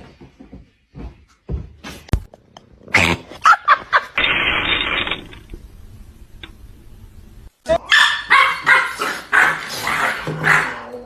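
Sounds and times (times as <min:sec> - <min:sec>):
dense hissing noise: 0:04.2 - 0:07.7.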